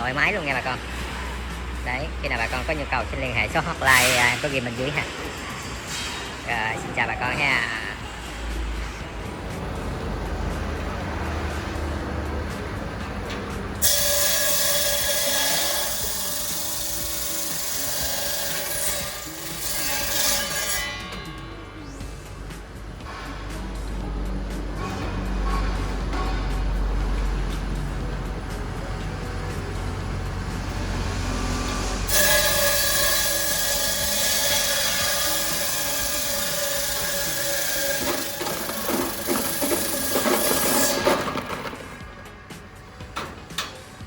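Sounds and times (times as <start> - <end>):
background music: 0.0 - 44.0
ice cutter grinding through ice: 13.8 - 20.5, 32.0 - 42.0.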